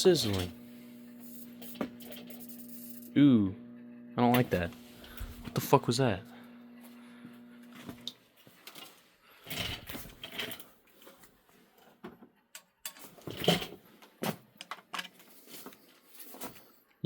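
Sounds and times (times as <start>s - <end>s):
rustling handling noises: 13.0s - 17.0s.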